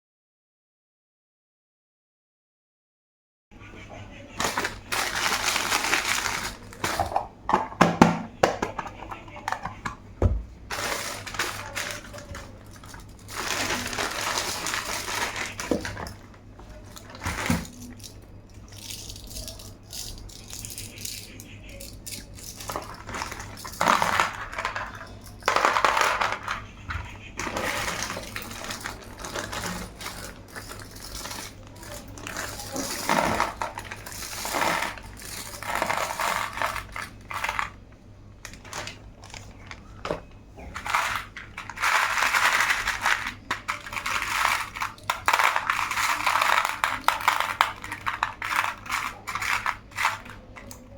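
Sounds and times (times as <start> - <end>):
packaging rustling: 4.4 - 7.4, 10.6 - 18.1, 22.2 - 26.7, 27.4 - 37.8, 38.4 - 40.1, 40.7 - 50.6.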